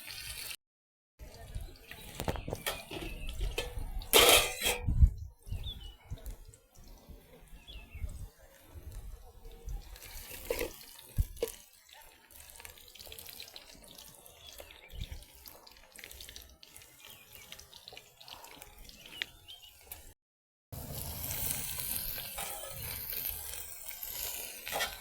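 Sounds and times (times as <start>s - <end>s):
water running and splashing: 5.8s - 20.1s.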